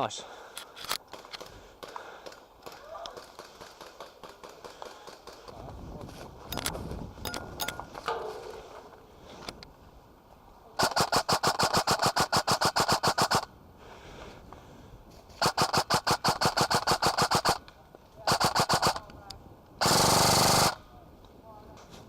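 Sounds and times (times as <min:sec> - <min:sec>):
airsoft gun full-auto bursts: 0:10.8 - 0:13.5, 0:15.4 - 0:17.6, 0:18.3 - 0:19.1, 0:19.8 - 0:20.8.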